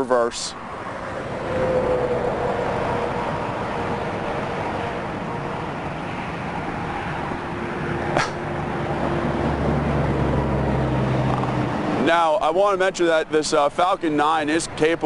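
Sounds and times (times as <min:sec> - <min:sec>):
road traffic noise: 0:00.0 - 0:15.0
vehicle engine hum: 0:00.0 - 0:15.0
sharp click: 0:08.2 - 0:08.4.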